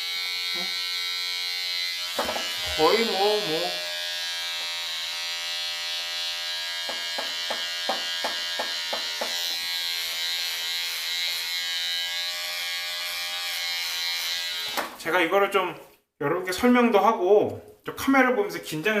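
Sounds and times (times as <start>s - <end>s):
electric hair clipper buzzing: 0.0s - 15.0s.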